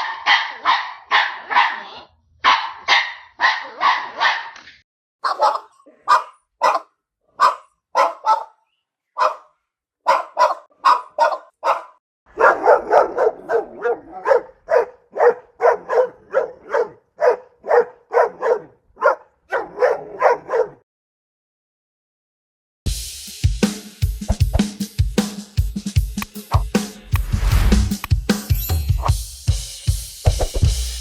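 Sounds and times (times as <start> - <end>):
dog barking: 0.0 - 4.6, 5.2 - 20.8
low rumble: 27.1 - 28.0.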